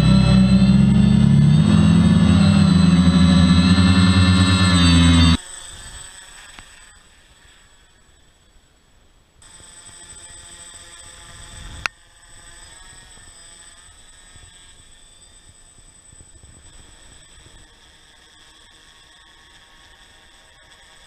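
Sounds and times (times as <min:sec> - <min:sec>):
drone motors buzzing: 0:00.0 - 0:05.4.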